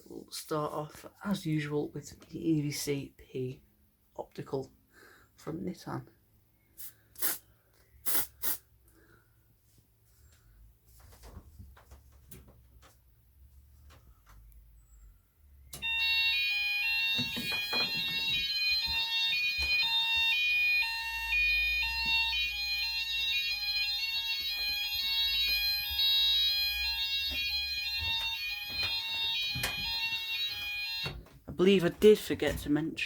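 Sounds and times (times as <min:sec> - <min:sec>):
fire alarm two-note tones: 0:15.8 - 0:31.2
steady alarm tone: 0:15.8 - 0:31.4.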